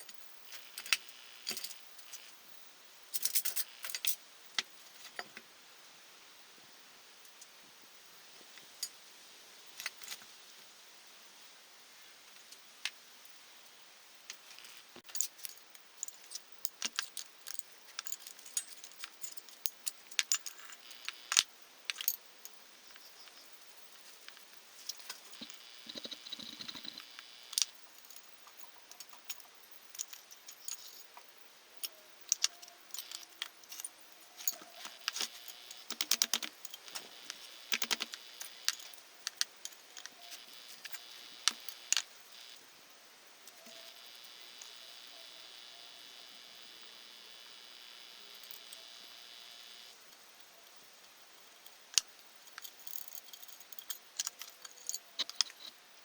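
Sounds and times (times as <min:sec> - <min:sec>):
small metal parts clinking: 0:00.5 - 0:02.4, 0:03.1 - 0:04.2, 0:14.3 - 0:31.2, 0:31.8 - 0:42.2, 0:51.7 - 0:55.8.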